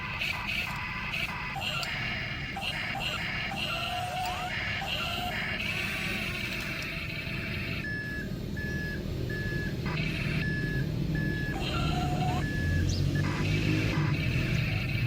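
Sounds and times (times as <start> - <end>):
reversing beeper: 7.8 - 15.0.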